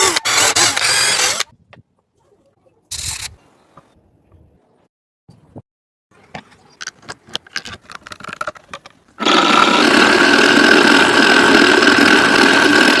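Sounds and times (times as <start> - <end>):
scroll saw motor whining: 0.0 - 1.5
handling clicks and knocks: 6.2 - 9.0.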